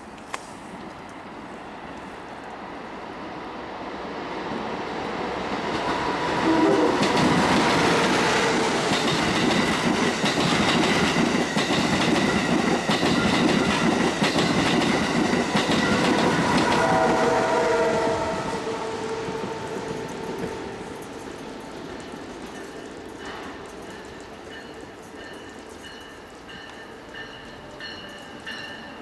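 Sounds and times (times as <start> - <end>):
train rushing past: 1.2 - 29.0
wheels clacking over rail joints: 7.0 - 17.2, 19.1 - 29.0.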